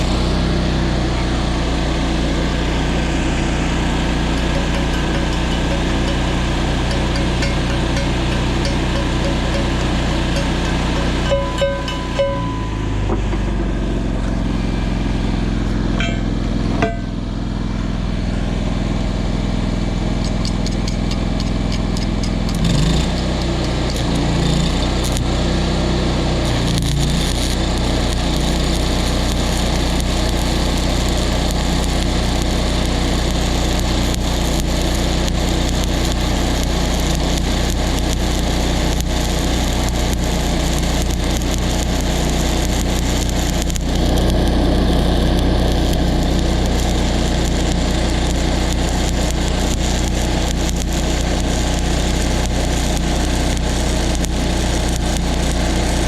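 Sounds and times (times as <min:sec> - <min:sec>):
welding machine engine running: 0:00.0 - 0:12.6, 0:13.3 - 0:56.0.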